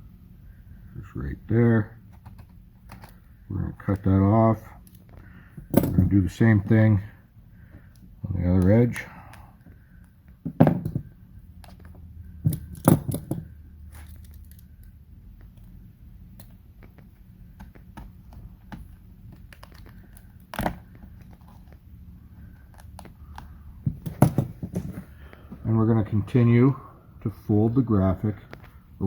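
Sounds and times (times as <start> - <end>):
vinyl film clicking and crinkling: 13.9 - 21.8.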